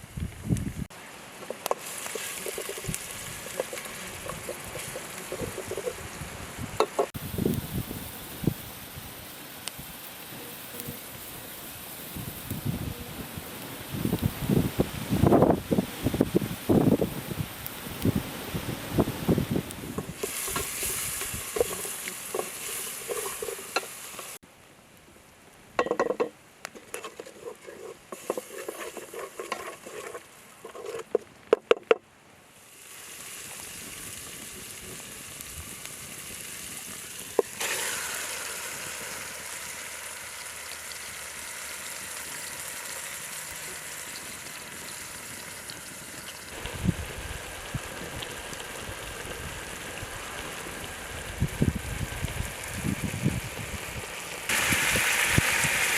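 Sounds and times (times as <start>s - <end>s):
food sizzling in a pan: 1.4s - 24.4s, 26.8s - 31.1s, 32.6s - 55.9s
stirring scrape: 1.7s - 6.0s, 20.0s - 24.4s, 26.8s - 31.3s.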